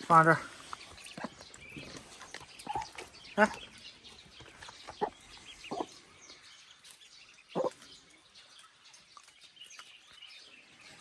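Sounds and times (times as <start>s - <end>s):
ducklings peeping: 2.5s - 6.4s
hen clucking: 4.9s - 5.9s.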